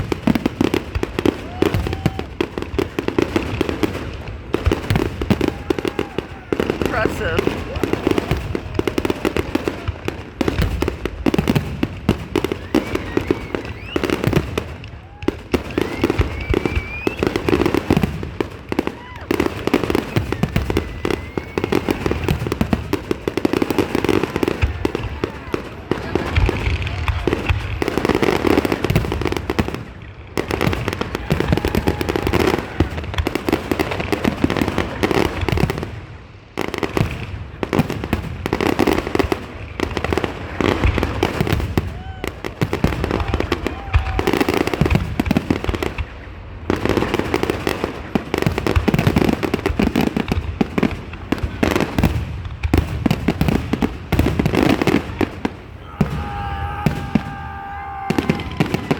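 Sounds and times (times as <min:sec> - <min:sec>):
fireworks bangs and crackling: 0:00.0 - 0:58.9.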